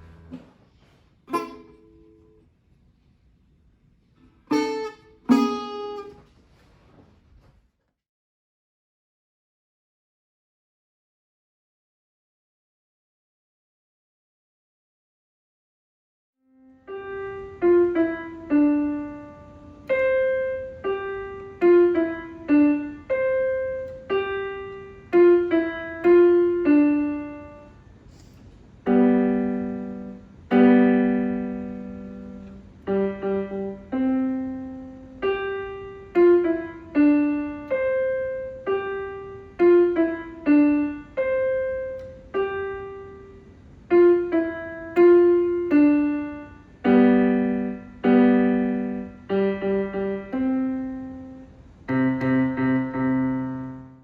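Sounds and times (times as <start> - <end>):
solo piano melody: 0.0 - 2.4, 4.4 - 6.2, 16.5 - 54.0.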